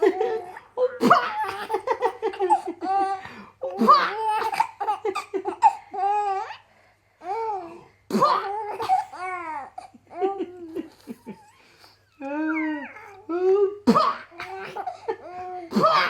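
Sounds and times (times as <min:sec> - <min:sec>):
baby laughing: 0:00.0 - 0:06.6.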